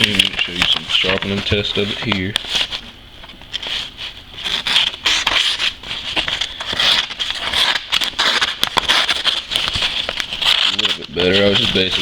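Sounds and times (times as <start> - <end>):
knife slicing through paper: 4.4 - 12.0.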